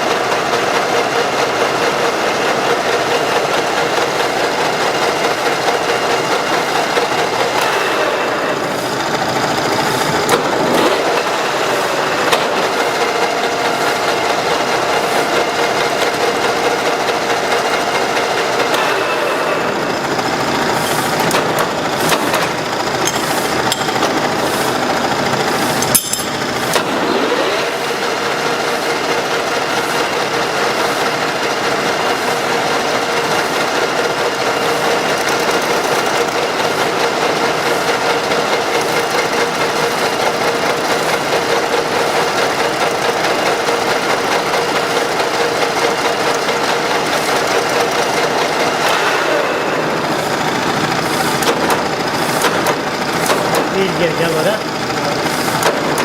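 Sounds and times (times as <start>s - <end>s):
machine tool cutting metal: 0.1s - 56.0s.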